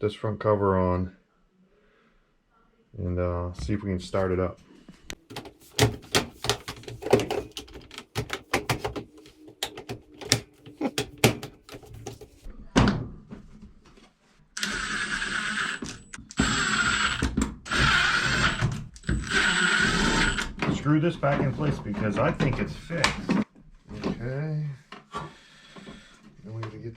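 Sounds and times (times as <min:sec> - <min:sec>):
plastic panel clicking and rattling: 0:05.3 - 0:12.2
cordless drill whirring: 0:14.6 - 0:20.5.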